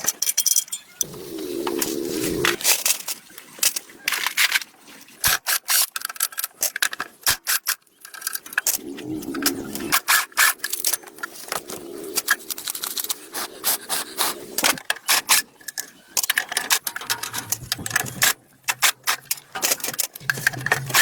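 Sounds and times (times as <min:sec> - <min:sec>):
tools clicking and knocking: 0:00.0 - 0:01.0, 0:14.6 - 0:21.0.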